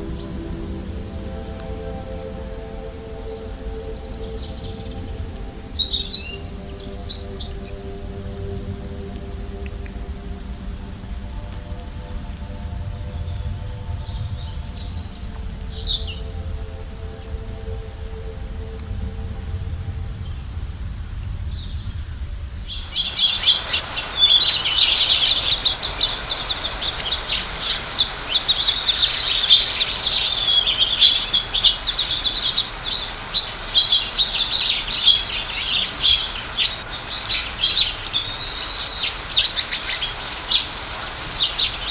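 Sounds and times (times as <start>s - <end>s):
small birds chirping: 2.8s - 8.1s, 20.8s - 41.9s.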